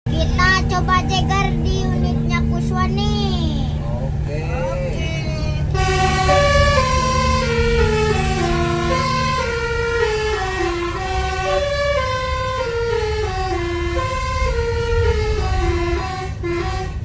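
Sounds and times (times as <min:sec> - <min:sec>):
low steady drone: 0:03.7 - 0:17.0
bus horn melody: 0:05.6 - 0:17.0.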